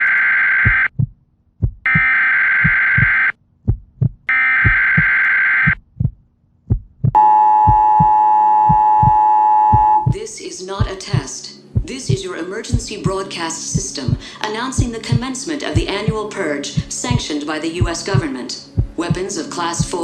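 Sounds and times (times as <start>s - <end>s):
harsh buzzing data bursts: 0.0s - 0.9s, 1.9s - 3.3s, 4.3s - 5.8s
low thudding: 0.6s - 10.2s, 10.8s - 13.1s, 17.8s - 19.2s
two-tone attention signal: 7.2s - 10.2s.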